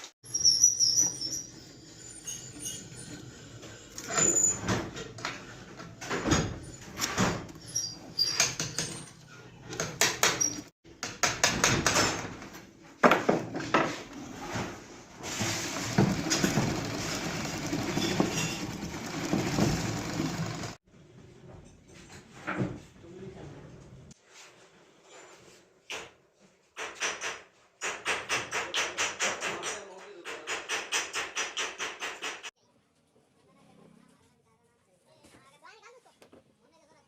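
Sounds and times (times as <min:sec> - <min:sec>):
mechanical running noise: 0:15.3 - 0:20.8
metal knocks and clatter: 0:15.3 - 0:20.8.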